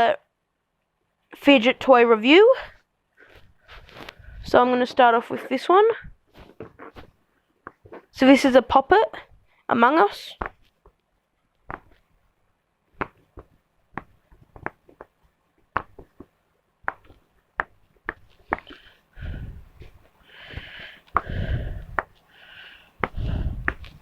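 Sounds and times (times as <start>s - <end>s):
rough scuffing with low rumble: 23.0s - 24.0s.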